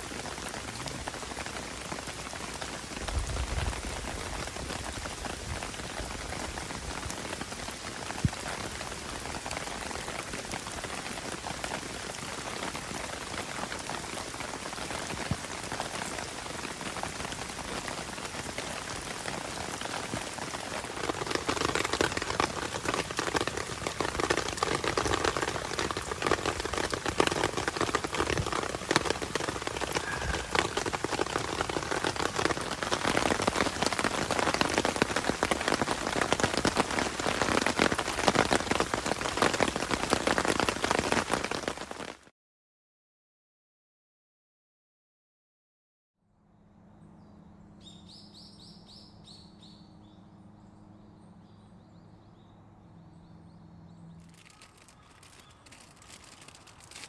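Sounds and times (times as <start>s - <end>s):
heavy rain on a tarp: 0.0s - 42.3s, 54.2s - 57.0s.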